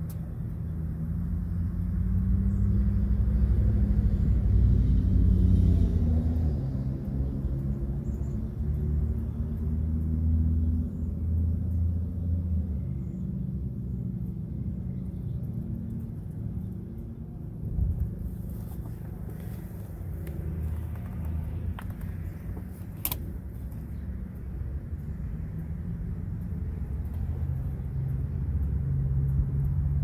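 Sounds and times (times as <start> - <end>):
low outdoor rumble: 0.0 - 30.0
sharp click: 21.1 - 23.8.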